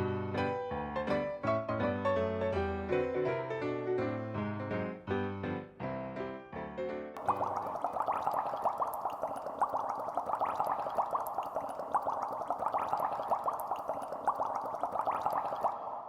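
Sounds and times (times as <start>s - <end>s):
water bubbling and gurgling: 7.2s - 16.0s.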